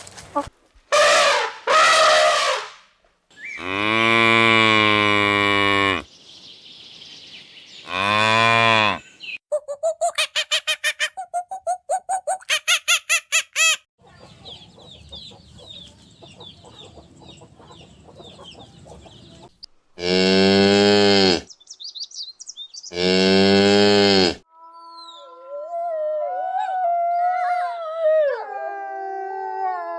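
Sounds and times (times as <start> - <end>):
short high calls: 0.9 - 2.8
cow mooing: 3.6 - 6.0, 7.9 - 9.0, 20.0 - 21.5, 22.9 - 24.4
faint chirping: 14.0 - 19.7.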